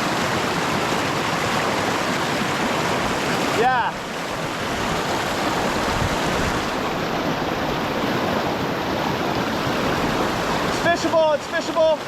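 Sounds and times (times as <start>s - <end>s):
river rapids roaring: 0.0s - 12.0s.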